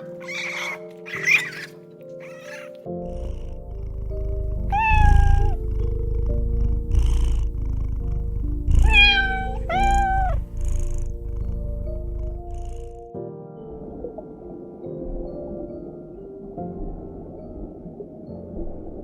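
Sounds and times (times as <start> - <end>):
animal calling: 0.0 - 3.4, 4.1 - 5.9, 8.8 - 10.8
background music with sustained tones: 0.0 - 19.0.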